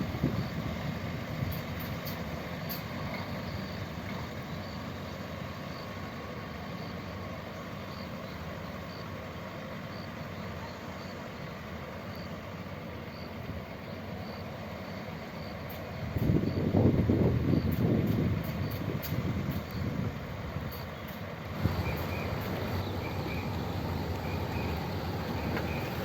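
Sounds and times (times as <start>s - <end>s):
diesel engine rumbling: 0.0s - 26.0s
faint high ticks: 17.7s - 19.8s, 20.7s - 26.0s.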